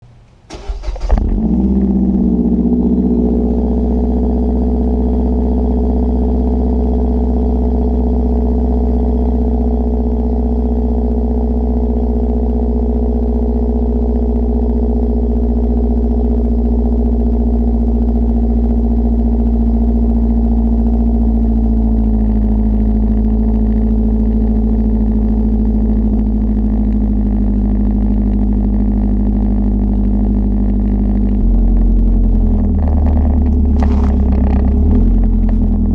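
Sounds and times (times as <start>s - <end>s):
car engine idling: 0.0s - 35.9s.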